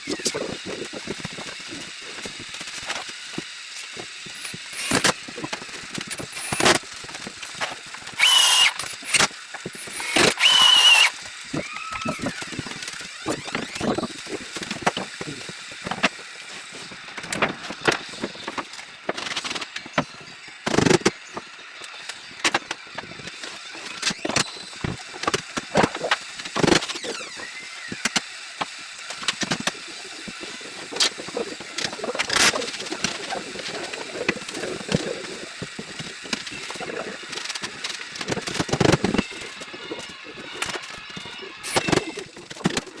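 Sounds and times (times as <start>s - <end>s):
power tool whine: 0.0s - 43.0s.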